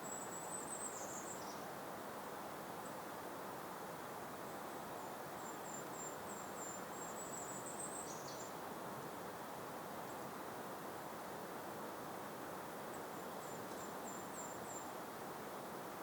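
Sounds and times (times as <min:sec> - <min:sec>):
small bird singing: 0:00.0 - 0:01.6, 0:05.4 - 0:08.6
soft breeze hiss: 0:00.0 - 0:16.0.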